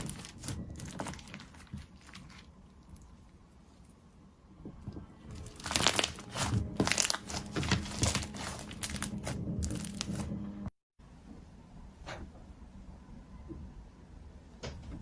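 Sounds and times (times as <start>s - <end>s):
slime squishing and popping: 0.0s - 3.2s, 5.4s - 10.2s.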